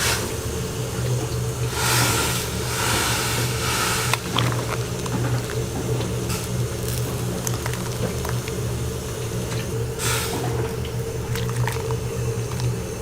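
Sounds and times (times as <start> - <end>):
rice sizzling in a pan: 1.7 - 9.4.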